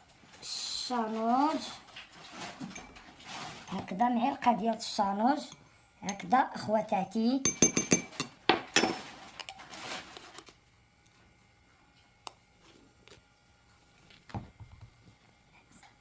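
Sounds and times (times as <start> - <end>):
metal spoon clinking on jar: 7.4 - 9.0.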